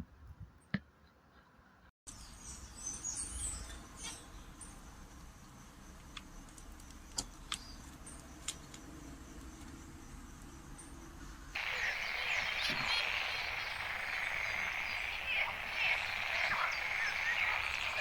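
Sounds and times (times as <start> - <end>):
finches chirping: 11.6 - 18.0.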